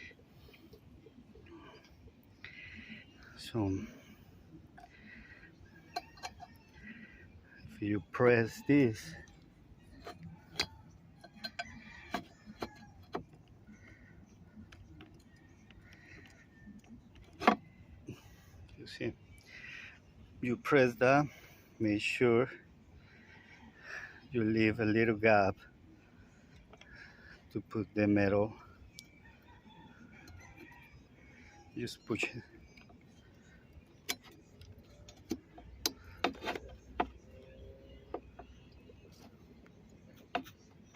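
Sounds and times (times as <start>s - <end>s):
sharp metal clicks and knocks: 34.0s - 37.5s.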